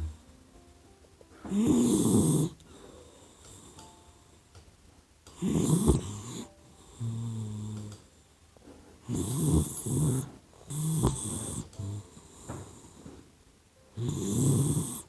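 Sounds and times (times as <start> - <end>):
puppy snoring: 1.4 - 3.8, 5.3 - 8.2, 9.0 - 13.3, 14.0 - 15.0.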